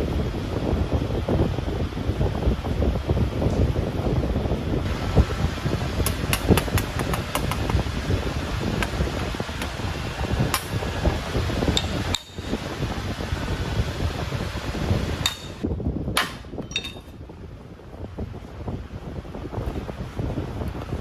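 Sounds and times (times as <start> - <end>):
low rumbling background: 0.0 - 21.0
hammer striking sheet metal: 11.8 - 12.5, 15.2 - 17.1.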